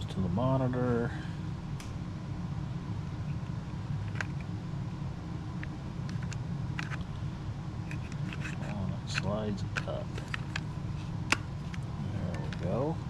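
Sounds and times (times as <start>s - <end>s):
low background hum: 0.0s - 13.0s
plastic parts clicking: 6.1s - 7.0s.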